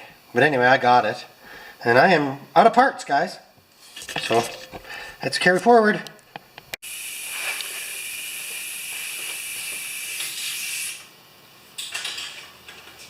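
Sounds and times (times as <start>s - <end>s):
aerosol spray hiss: 6.9s - 11.1s.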